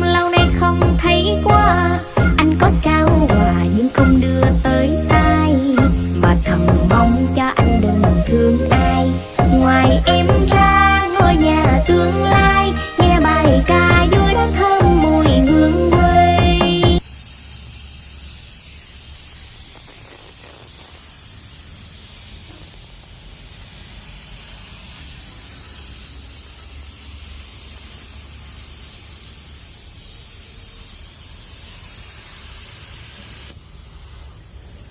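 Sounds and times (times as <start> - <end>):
plasma cutter hissing: 0.0 - 34.9.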